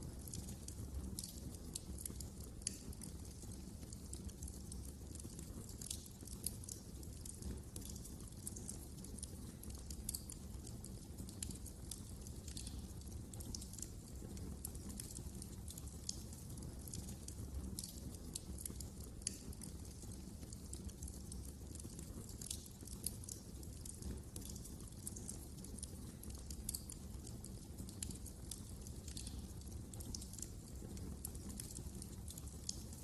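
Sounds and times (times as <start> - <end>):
wood fire crackling: 0.0 - 33.0.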